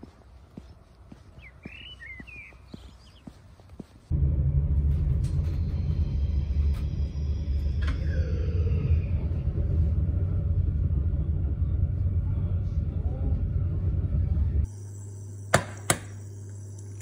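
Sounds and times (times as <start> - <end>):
vehicle rumble from inside: 4.1 - 14.7.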